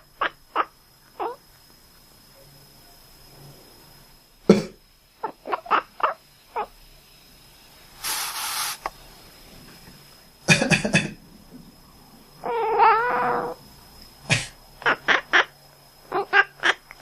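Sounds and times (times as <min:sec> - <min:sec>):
short breathy hiss: 0:07.9 - 0:09.4
cat calling: 0:12.4 - 0:13.6, 0:16.1 - 0:16.8.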